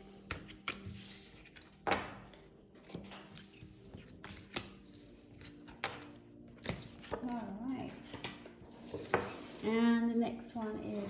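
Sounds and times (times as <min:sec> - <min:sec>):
cards clicking on a tabletop: 0:00.2 - 0:04.8, 0:05.4 - 0:09.6.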